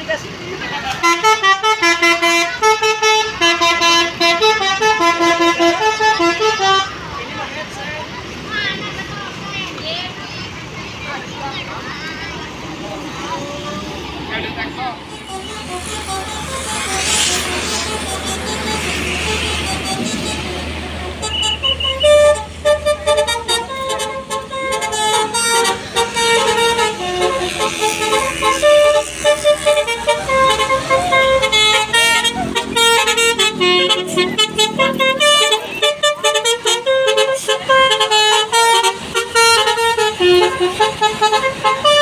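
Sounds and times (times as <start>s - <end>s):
bus engine rumble: 0.0s - 42.0s
multi-tone bus horn melody: 0.8s - 7.4s, 15.0s - 42.0s.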